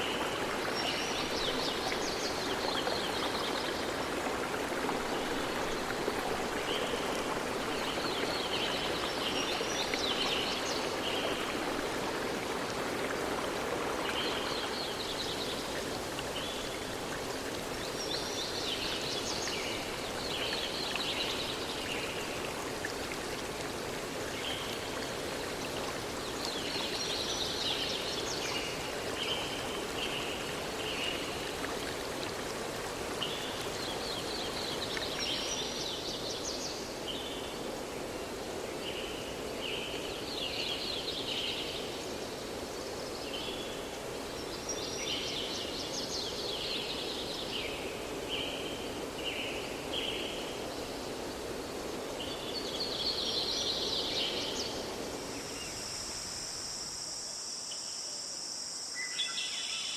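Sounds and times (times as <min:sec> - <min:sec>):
stream rushing: 0:00.0 - 0:38.7
insects chirring: 0:54.3 - 0:59.9.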